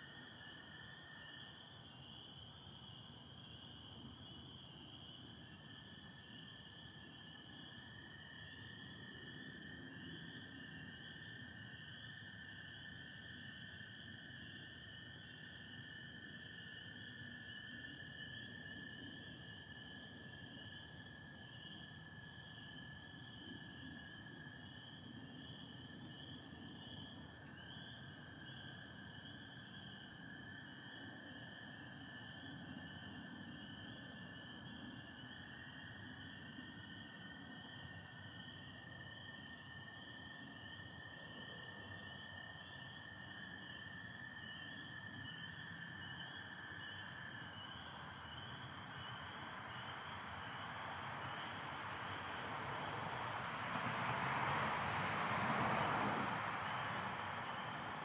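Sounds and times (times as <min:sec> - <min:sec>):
frogs peeping in chorus: 0:00.0 - 0:58.0
frogs peeping: 0:40.6 - 0:53.5
broad rush of noise: 0:50.2 - 0:58.0.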